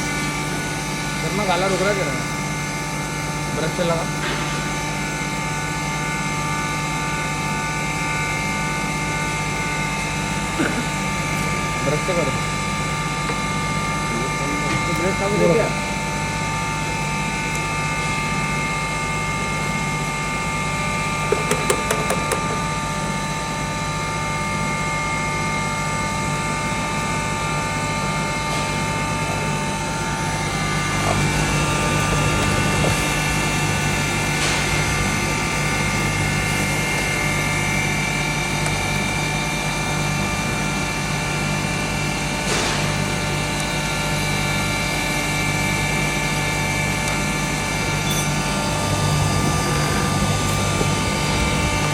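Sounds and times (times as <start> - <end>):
grinding machine whining: 28.9 - 51.9.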